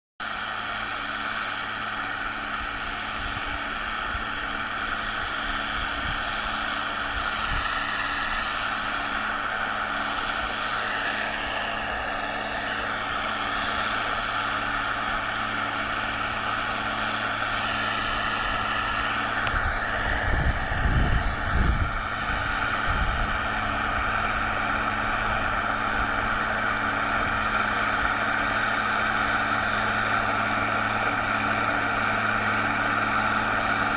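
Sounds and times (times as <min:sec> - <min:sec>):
diesel tractor engine running: 0:00.2 - 0:33.9
wind buffeting microphone: 0:03.1 - 0:10.5, 0:15.3 - 0:28.5.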